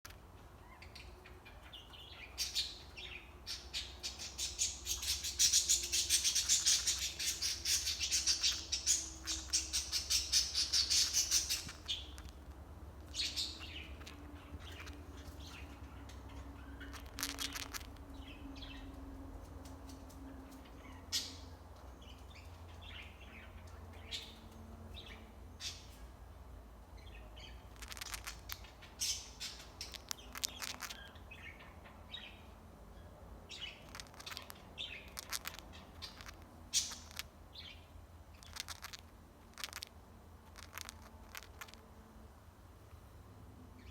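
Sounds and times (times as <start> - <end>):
cockatiel grinding beak: 16.8 - 18.0, 27.8 - 28.6, 29.8 - 31.0, 33.8 - 37.3, 38.4 - 39.9, 40.5 - 41.8.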